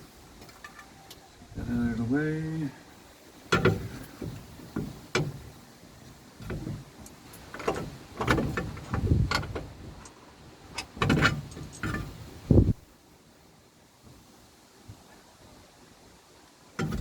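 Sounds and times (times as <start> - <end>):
tools and parts knocking and rattling: 3.5 - 5.5, 6.4 - 10.2, 10.8 - 12.2.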